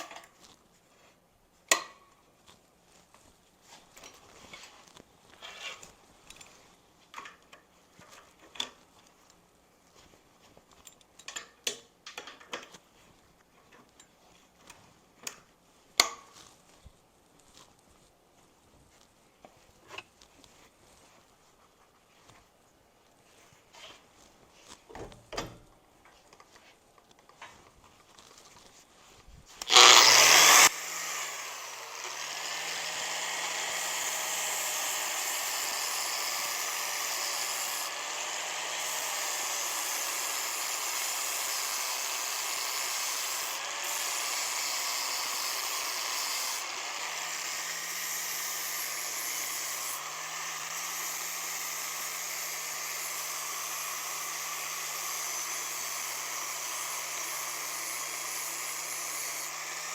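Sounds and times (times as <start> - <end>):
angle grinder grinding steel: 29.6 - 59.9.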